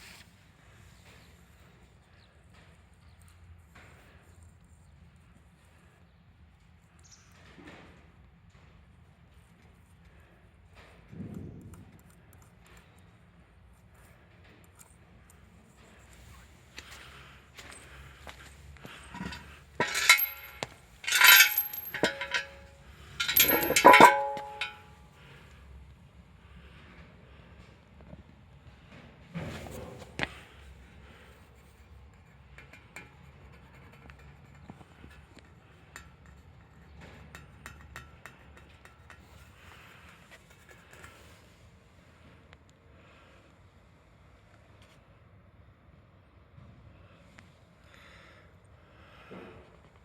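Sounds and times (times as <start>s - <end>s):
metal tools clinking and clanging: 17.6s - 25.0s.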